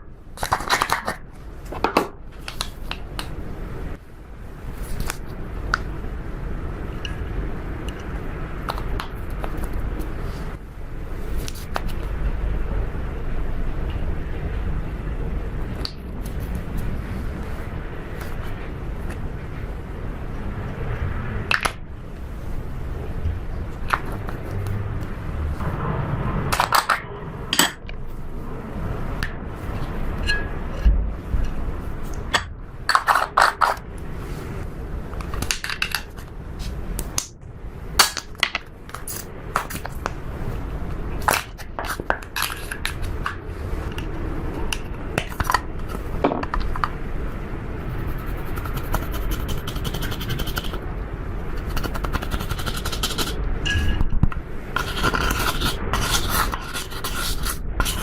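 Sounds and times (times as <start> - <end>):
slime scraping: 54.7 - 58.0.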